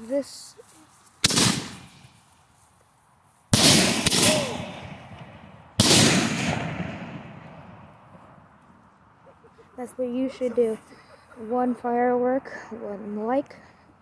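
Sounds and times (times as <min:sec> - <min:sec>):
firework shells booming: 0:01.2 - 0:02.2, 0:03.5 - 0:08.3
firework crack: 0:01.2 - 0:02.4, 0:03.5 - 0:08.4.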